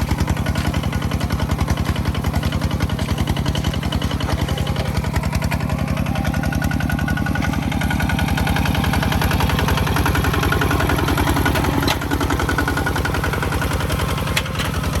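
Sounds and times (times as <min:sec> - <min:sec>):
farm machine engine chugging: 0:00.0 - 0:15.0.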